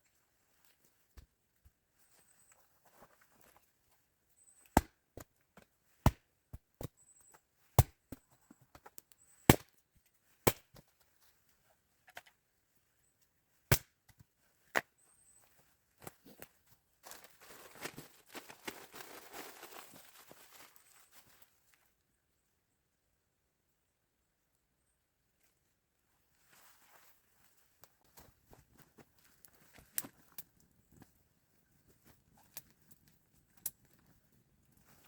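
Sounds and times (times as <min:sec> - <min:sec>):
axe chopping wood: 0:07.8 - 0:08.0, 0:09.5 - 0:09.7, 0:10.5 - 0:10.8, 0:13.7 - 0:13.9
rustling and crackling: 0:16.0 - 0:21.8.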